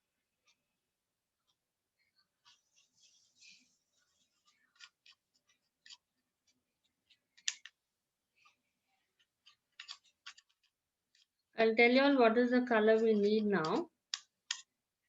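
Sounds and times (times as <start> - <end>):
small clicks and taps: 4.1 - 7.8, 8.4 - 11.4, 13.0 - 14.7.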